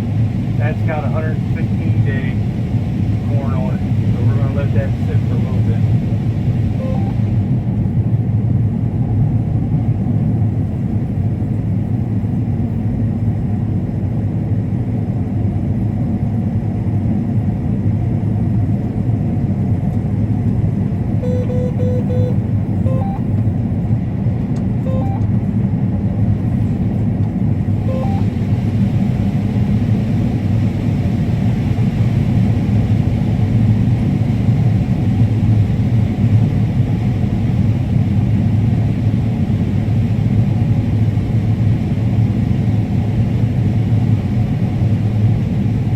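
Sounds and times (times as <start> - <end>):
combine harvester droning: 0.1 - 7.8, 21.1 - 31.5
faint beeps: 6.7 - 7.3, 21.2 - 23.4, 24.9 - 25.3, 27.8 - 28.4.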